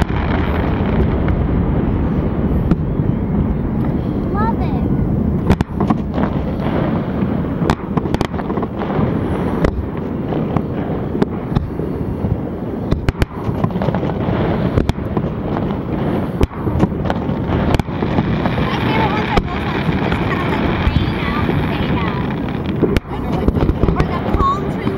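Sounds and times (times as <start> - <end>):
dense continuous noise: 0.0 - 24.9
firework shell bursts: 5.3 - 24.9.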